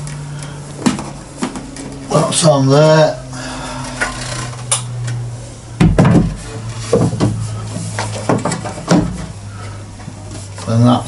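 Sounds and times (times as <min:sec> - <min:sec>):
steady low hum: 0:00.0 - 0:11.0
wooden panels knocking: 0:05.8 - 0:07.4, 0:08.1 - 0:09.3.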